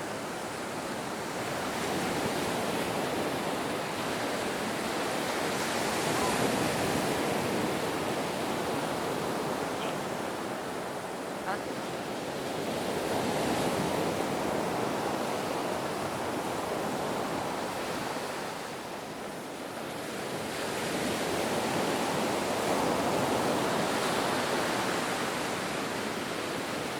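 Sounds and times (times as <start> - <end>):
ocean waves breaking: 0.0 - 19.0.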